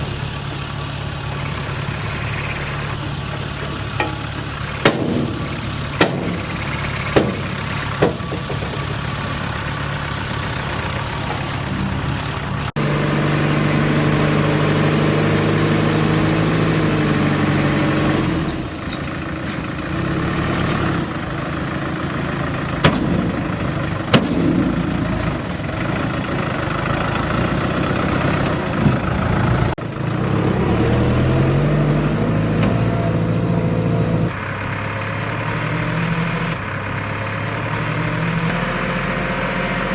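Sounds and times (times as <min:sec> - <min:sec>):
diesel machinery engines: 0:00.0 - 0:39.9
sharp metal clanks: 0:02.4 - 0:12.7, 0:22.8 - 0:26.4.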